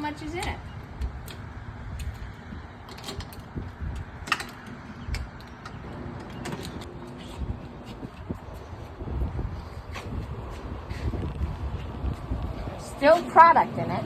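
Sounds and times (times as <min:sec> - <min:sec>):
vending machine lock clicks: 0:00.4 - 0:06.9.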